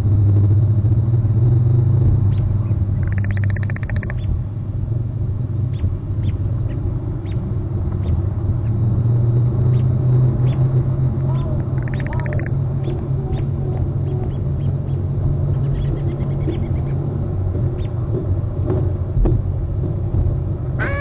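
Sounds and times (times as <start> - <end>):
eagle chittering: 2.3 - 4.4, 11.3 - 13.5.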